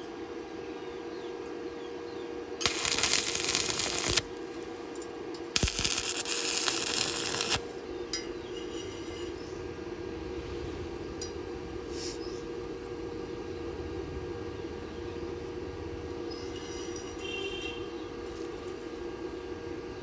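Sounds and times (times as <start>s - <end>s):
electrode striking metal: 2.6s - 4.4s, 5.6s - 9.2s
welding arc crackling: 2.6s - 5.0s, 5.6s - 7.8s.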